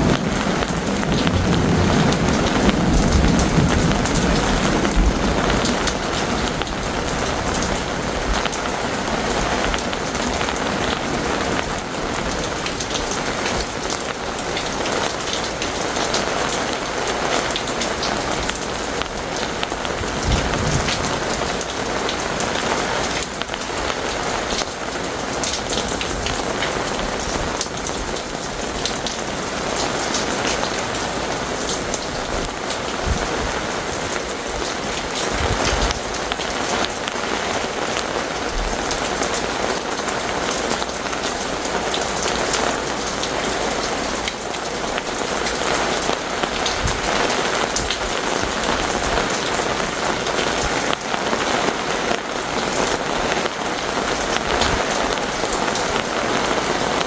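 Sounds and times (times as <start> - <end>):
thunder rumble: 0.0 - 14.0, 18.0 - 24.6, 25.6 - 37.4
heavy rain: 0.0 - 57.0.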